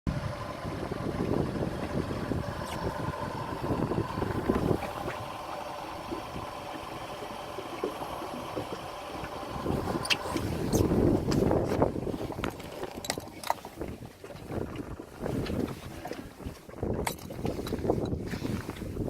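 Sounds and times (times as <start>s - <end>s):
wind on microphone: 0.1s - 7.0s, 8.1s - 19.0s
outboard motor idling: 0.1s - 19.0s.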